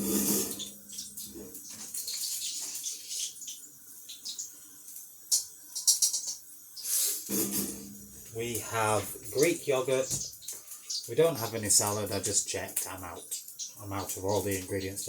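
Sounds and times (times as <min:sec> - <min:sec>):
water-like hiss: 0:00.0 - 0:00.7, 0:05.3 - 0:14.8
utensils clinking: 0:07.3 - 0:10.3.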